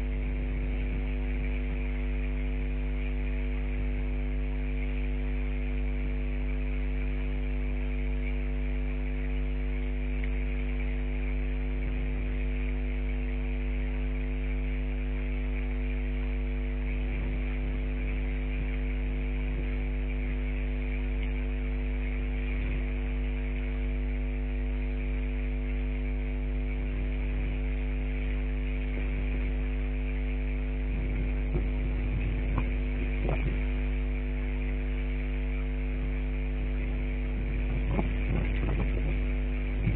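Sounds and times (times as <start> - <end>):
electrical mains hum: 0.0 - 39.9
constant hiss: 9.1 - 39.9.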